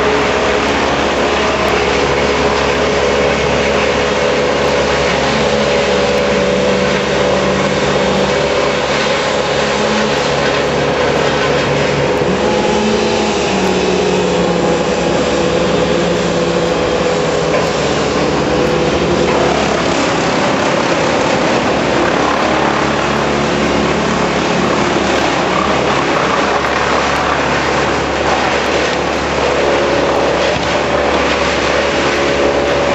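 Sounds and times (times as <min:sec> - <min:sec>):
machinery engines humming: 0:00.0 - 0:32.9.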